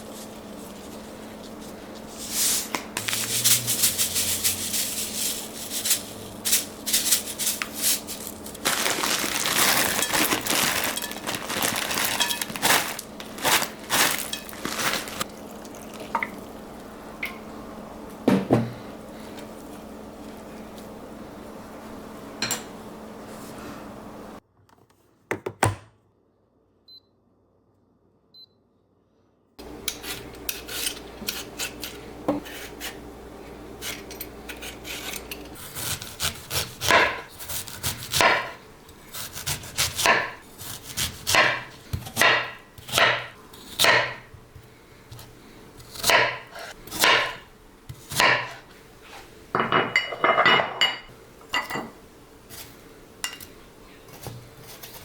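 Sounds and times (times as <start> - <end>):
scraping strokes: 0.0 - 8.8.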